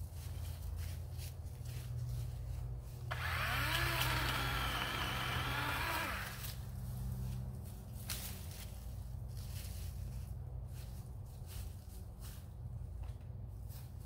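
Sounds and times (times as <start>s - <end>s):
electric chainsaw whine: 3.1s - 6.6s.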